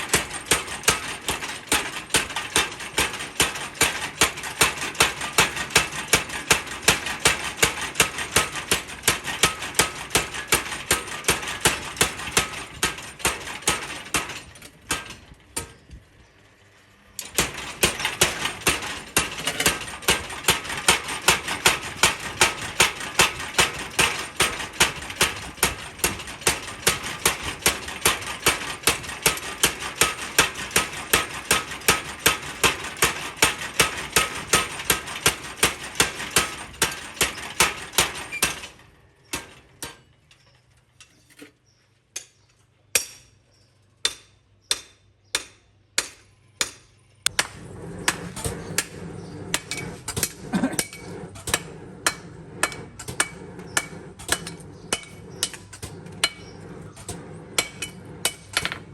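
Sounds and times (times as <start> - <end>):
constant background noise: 8.6 - 58.9
hammer striking metal: 42.2 - 43.4, 44.0 - 58.9.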